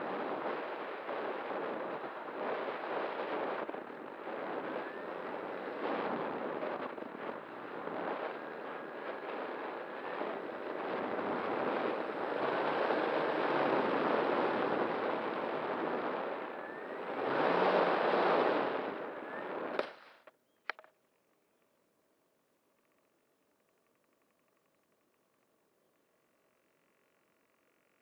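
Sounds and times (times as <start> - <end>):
wind noise on microphone: 0.0 - 19.9
sharp clicks: 19.8 - 20.9.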